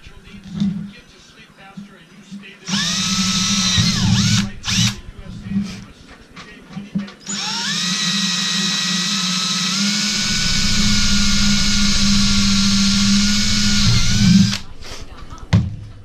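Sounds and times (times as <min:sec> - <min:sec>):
electric drill whining: 0:02.7 - 0:05.0, 0:07.3 - 0:14.7.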